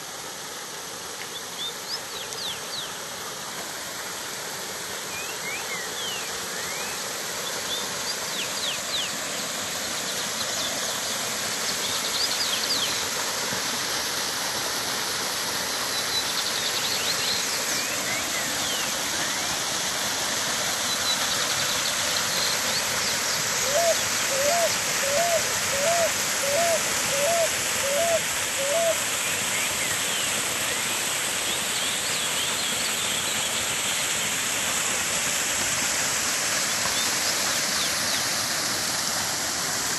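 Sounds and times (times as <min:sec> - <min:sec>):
small waterfall: 0:00.0 - 0:39.9
birds chirping: 0:15.9 - 0:19.6, 0:20.7 - 0:30.9
bird giving short low calls: 0:23.6 - 0:29.0.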